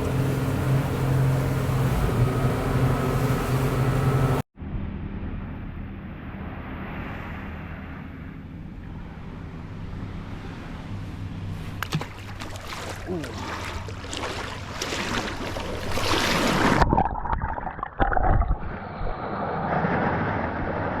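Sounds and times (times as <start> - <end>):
engine humming: 0.0 - 6.9
quieter engine drone: 0.0 - 16.6.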